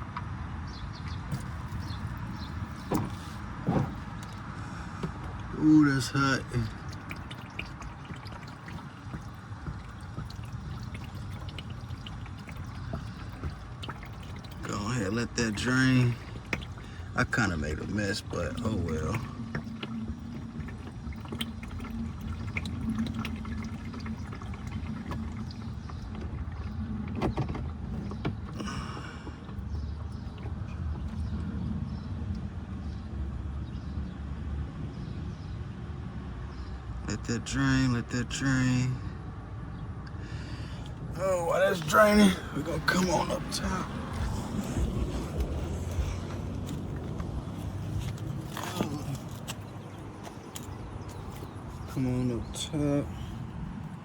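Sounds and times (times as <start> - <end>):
oil pouring into drain pan: 1.3 - 27.2
oil spattering ticks: 6.6 - 15.6.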